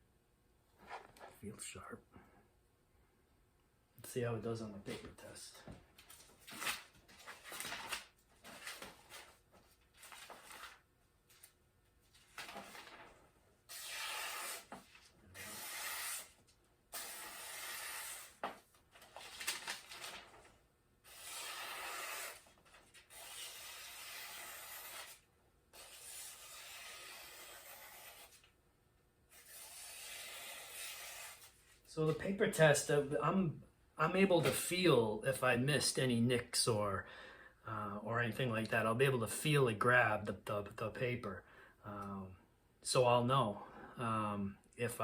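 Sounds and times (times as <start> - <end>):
knife slicing paper: 13.7 - 14.8, 15.4 - 16.4, 21.1 - 25.2, 25.8 - 28.4.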